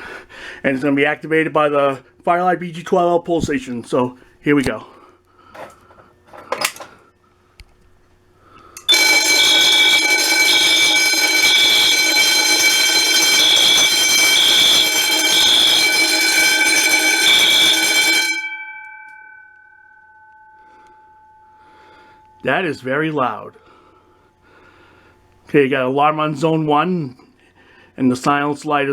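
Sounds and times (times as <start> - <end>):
fire alarm bell ringing: 8.7 - 23.9
alarm horn beeping: 8.8 - 19.4.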